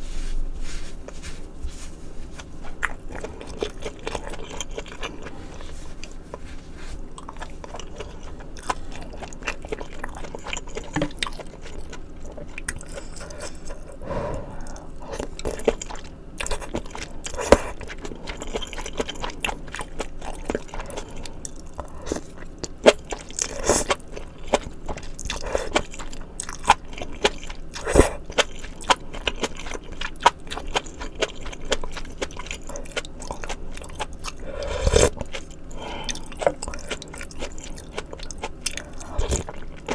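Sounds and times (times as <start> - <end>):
person chewing food: 0.0 - 39.9.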